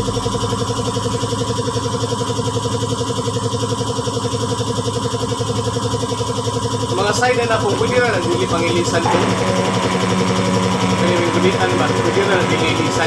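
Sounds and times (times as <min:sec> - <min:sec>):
small engine idling: 0:00.0 - 0:13.0.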